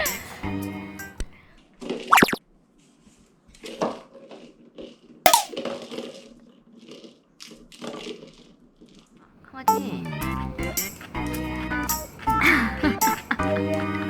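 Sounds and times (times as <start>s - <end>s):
container knocking on hard surface: 5.3s - 5.6s.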